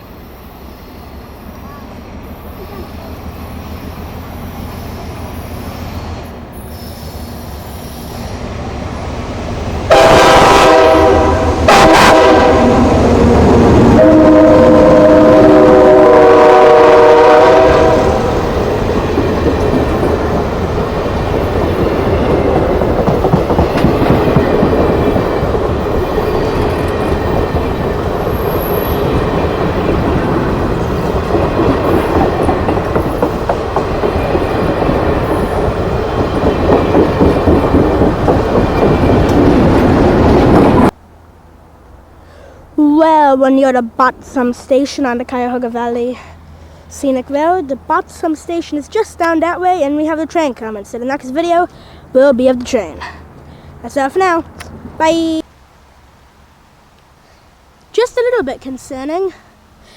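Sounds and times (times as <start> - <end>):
train rumble: 0.0 - 59.9
locomotive air horn: 9.9 - 18.5
wheels clacking on rail joints: 18.4 - 40.9.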